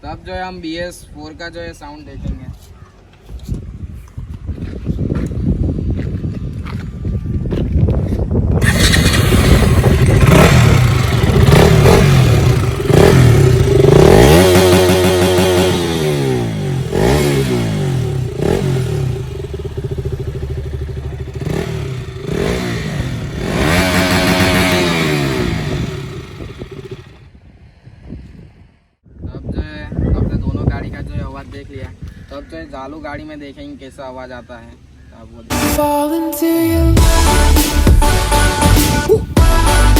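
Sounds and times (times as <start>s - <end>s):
motorcycle engine revving: 8.6s - 27.3s.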